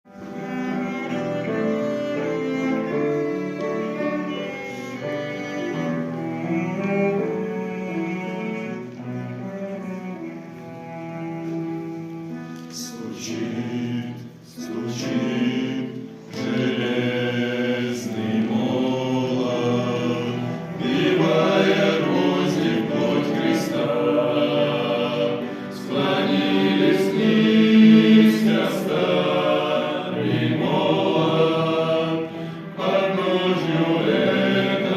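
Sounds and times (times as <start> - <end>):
men's choir singing a hymn: 12.2 - 34.9.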